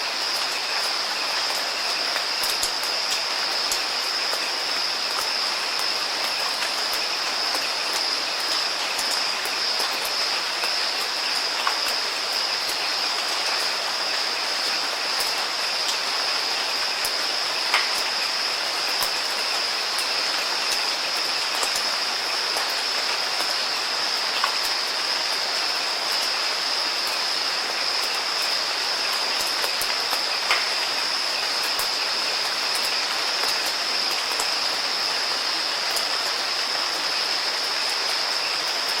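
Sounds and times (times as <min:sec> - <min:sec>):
steady rain hiss: 0:00.0 - 0:39.0
raindrop ticks: 0:29.4 - 0:30.8.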